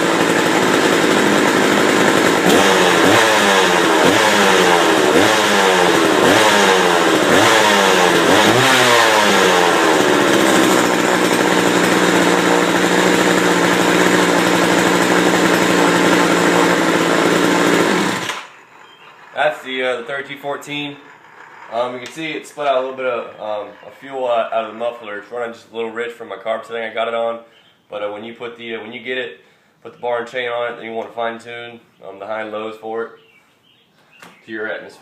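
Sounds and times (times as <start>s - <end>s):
chainsaw revving and idling: 0.0s - 25.1s.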